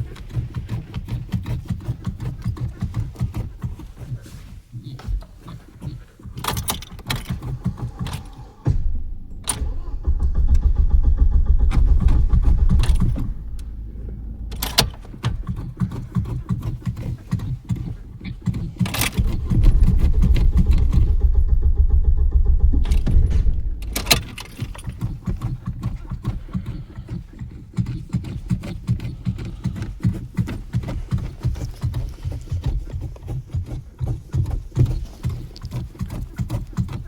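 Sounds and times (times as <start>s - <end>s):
car starter cranking: 5.0s - 31.9s
sharp clicks: 6.3s - 32.1s.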